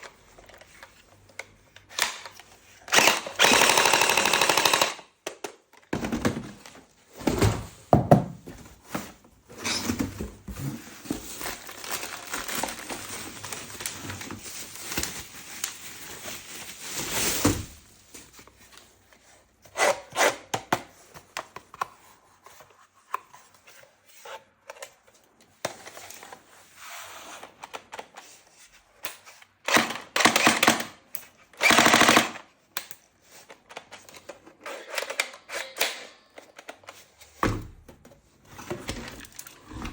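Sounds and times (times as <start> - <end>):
toy gun firing bursts: 2.9 - 5.1, 31.6 - 32.4.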